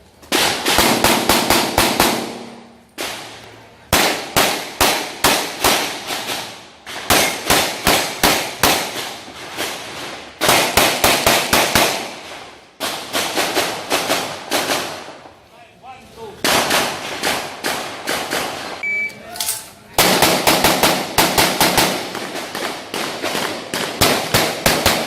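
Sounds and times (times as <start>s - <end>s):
rapid gunshots with echo: 0.4s - 3.2s, 10.4s - 15.1s, 16.4s - 18.8s, 20.0s - 25.0s.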